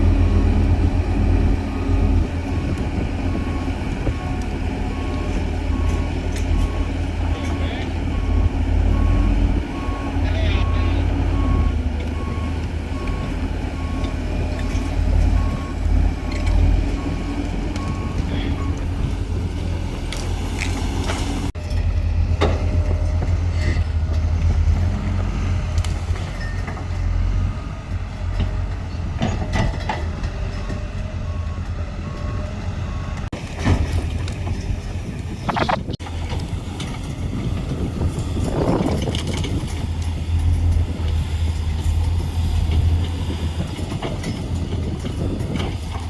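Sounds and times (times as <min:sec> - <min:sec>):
diesel excavator engine rumbling: 0:00.0 - 0:46.0
warning alarm beeps: 0:01.8 - 0:14.2, 0:15.3 - 0:19.2.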